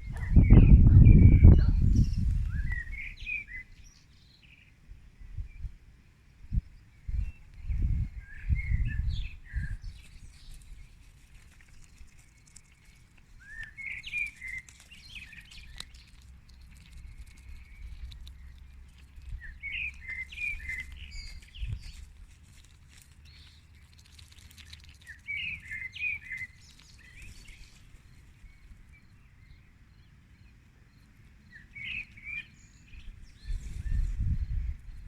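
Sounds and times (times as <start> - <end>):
low microphone rumble: 0.0 - 3.2, 6.5 - 10.0
songbird singing: 0.0 - 35.0.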